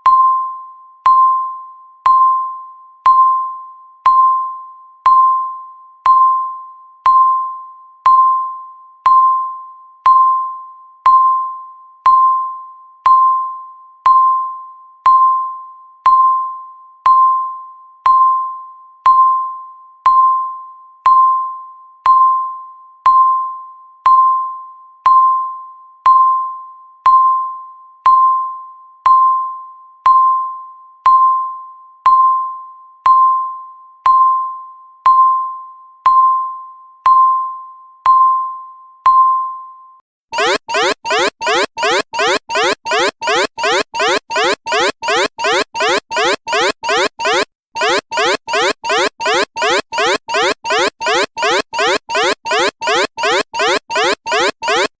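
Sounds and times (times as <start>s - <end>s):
countdown timer beeps: 40.4s - 55.0s.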